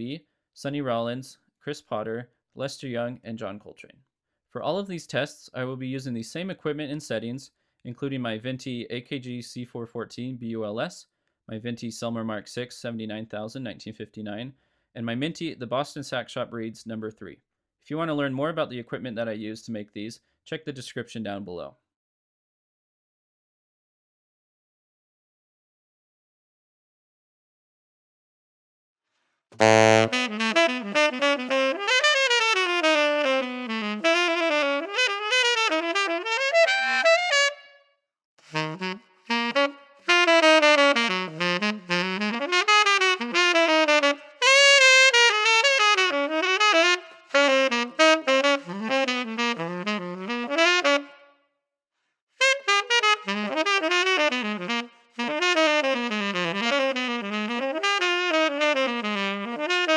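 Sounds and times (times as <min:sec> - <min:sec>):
solo saxophone jazz line: 0:29.6 - 0:37.8, 0:38.4 - 0:51.2, 0:52.4 - 0:59.9.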